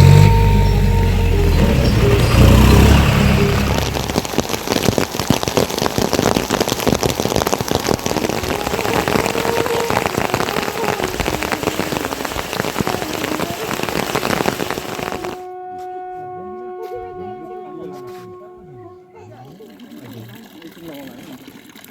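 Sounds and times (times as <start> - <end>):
heavy rain on a surface: 0.0 - 15.4.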